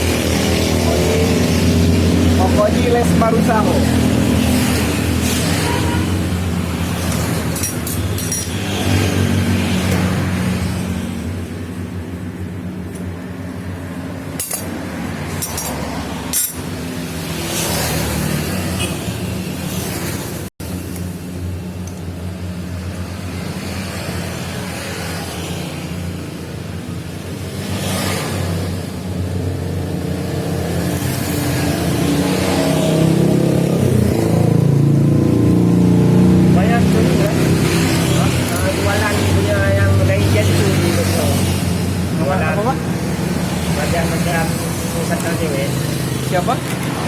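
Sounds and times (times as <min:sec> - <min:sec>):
two-stroke motorcycle engine running: 0:00.0 - 0:19.0.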